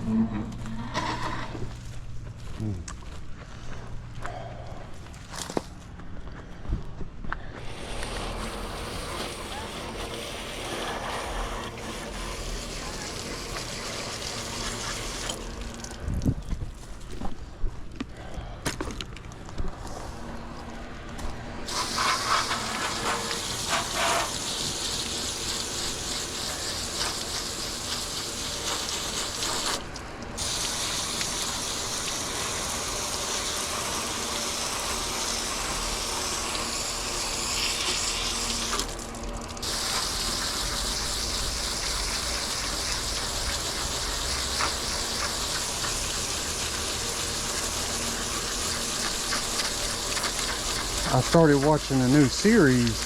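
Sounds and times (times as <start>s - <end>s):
water gushing: 7.6s - 17.1s, 21.7s - 53.0s.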